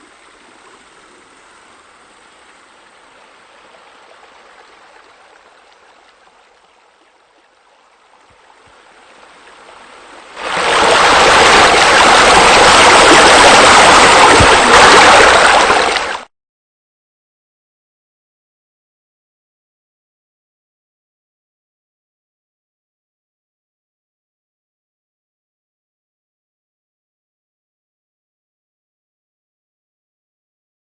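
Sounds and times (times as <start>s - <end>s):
water trickling: 0.0s - 16.3s
rush of falling water: 8.3s - 16.3s.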